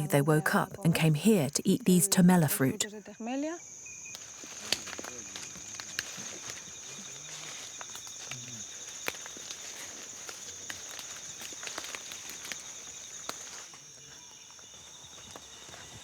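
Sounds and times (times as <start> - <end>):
insects droning: 0.0 - 16.0
footsteps in leaf litter: 4.4 - 7.8.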